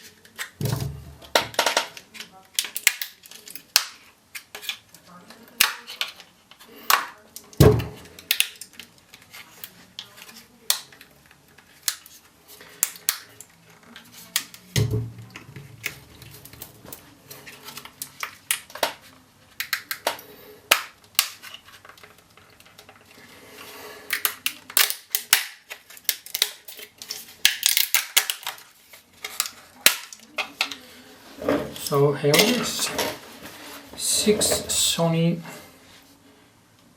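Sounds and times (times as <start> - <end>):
plastic case cracking open: 24.1 - 30.4
rustling: 28.4 - 36.4.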